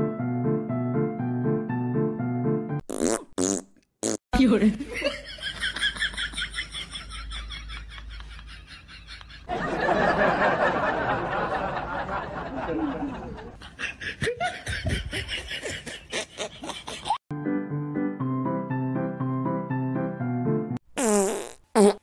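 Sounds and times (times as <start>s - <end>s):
snickering laughter: 12.4s - 17.2s.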